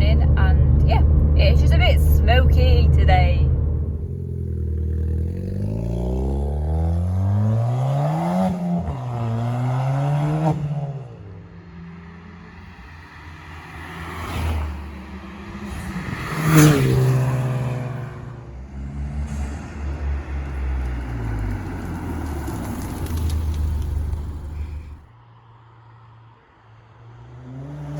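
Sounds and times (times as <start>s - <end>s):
exhaust crack: 0.0s - 9.1s, 14.6s - 25.0s
car engine accelerating hard: 0.0s - 25.0s.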